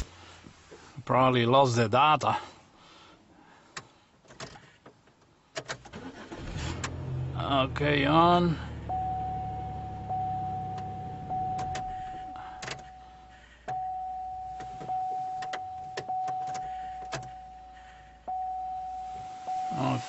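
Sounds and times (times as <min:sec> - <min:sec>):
dashboard warning chime: 0:08.8 - 0:20.0.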